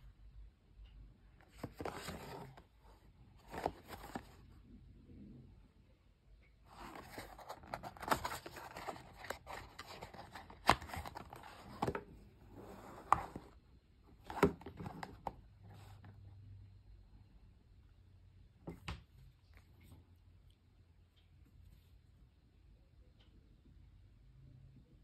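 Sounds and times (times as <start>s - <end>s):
packaging rustling and scraping: 1.5s - 2.6s, 3.4s - 4.4s, 6.7s - 13.6s, 14.2s - 16.2s.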